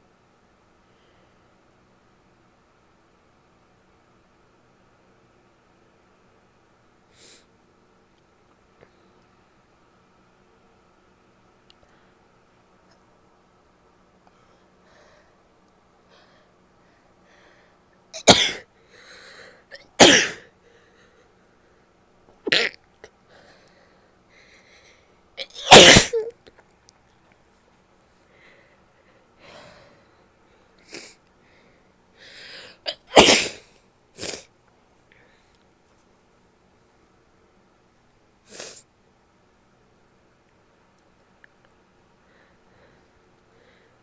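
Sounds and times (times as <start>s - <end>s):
person sneezing: 18.2s - 18.6s, 19.8s - 20.5s, 22.5s - 22.8s, 25.4s - 26.3s, 32.9s - 34.5s, 38.5s - 38.8s
breathy inhales: 18.8s - 19.7s, 28.3s - 32.8s.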